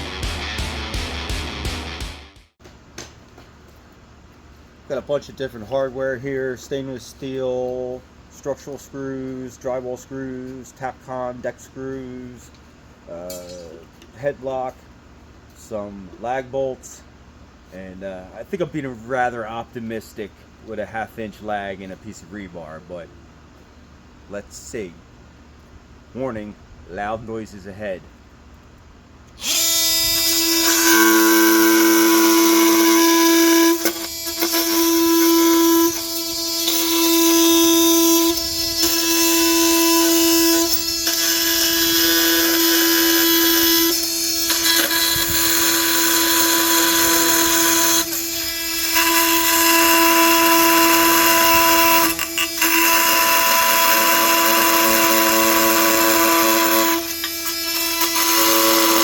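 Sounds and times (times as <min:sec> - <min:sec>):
multi-tool cutting metal: 0:29.4 - 0:59.0.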